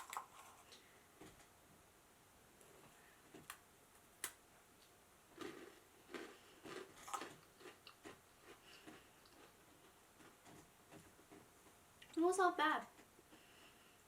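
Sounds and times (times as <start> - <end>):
meringue cookie crunching: 2.6 - 12.2.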